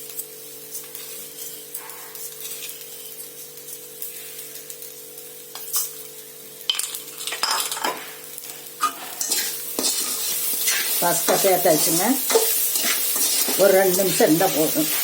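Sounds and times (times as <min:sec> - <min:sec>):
food sizzling in oil: 0:00.0 - 0:15.0
spoon scraping and stirring: 0:08.8 - 0:15.0.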